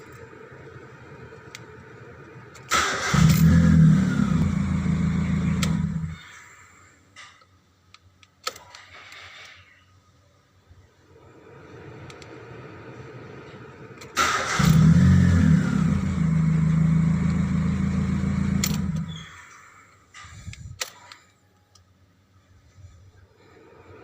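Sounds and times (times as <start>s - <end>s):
car engine with leaking exhaust: 14.2s - 19.2s
sharp clicks: 18.6s - 19.2s.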